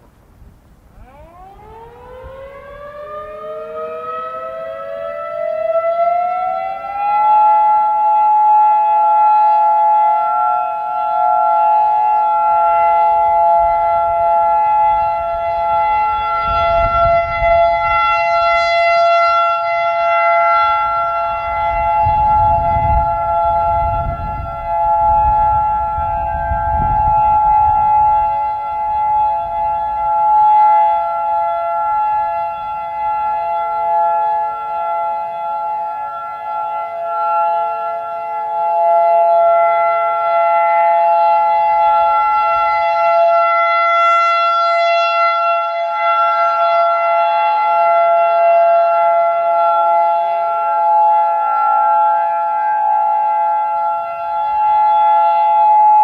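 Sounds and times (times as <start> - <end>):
wind rumble on microphone: 0.0 - 3.5, 11.7 - 34.2
distant sirens: 0.0 - 56.0
warning siren steady alert tone: 0.9 - 56.0.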